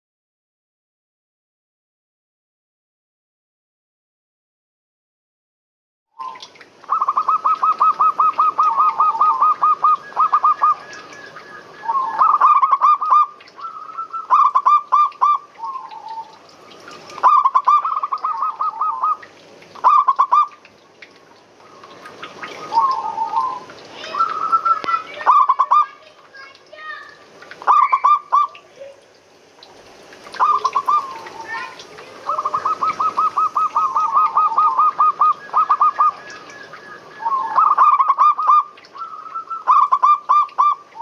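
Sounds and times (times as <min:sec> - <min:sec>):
doves cooing: 0:06.2 - 0:20.6, 0:21.6 - 0:25.9, 0:27.6 - 0:29.0, 0:30.2 - 0:41.0
faint steady hiss: 0:06.2 - 0:41.0.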